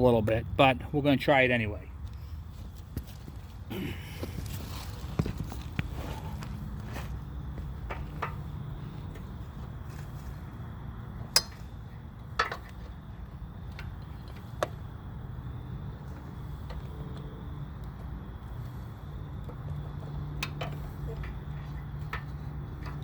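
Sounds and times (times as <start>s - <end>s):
steady low hum: 0.0s - 23.0s
sharp metal clicks and knocks: 11.2s - 13.0s, 19.4s - 23.0s.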